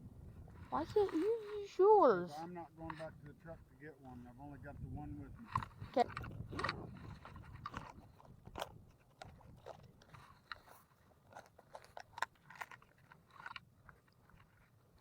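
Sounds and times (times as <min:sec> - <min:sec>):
fishing tackle crinkling and clicking: 0:05.4 - 0:15.0.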